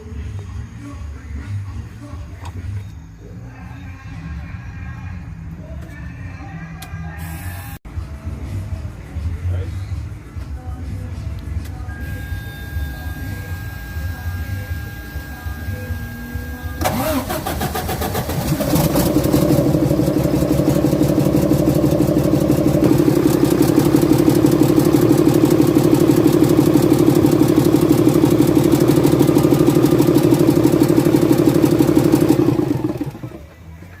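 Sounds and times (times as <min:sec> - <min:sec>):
diesel engine clattering: 0:16.8 - 0:33.8.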